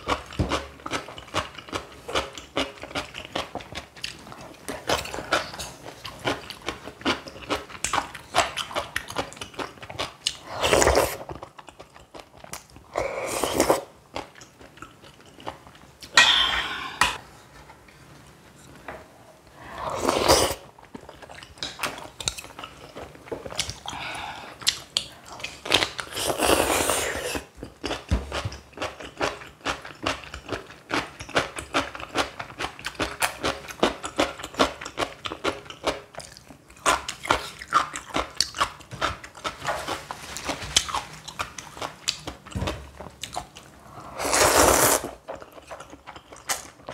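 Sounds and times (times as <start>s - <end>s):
slurping noodles: 10.4s - 11.3s, 13.0s - 13.9s, 19.6s - 20.7s, 26.0s - 27.5s, 43.8s - 45.2s.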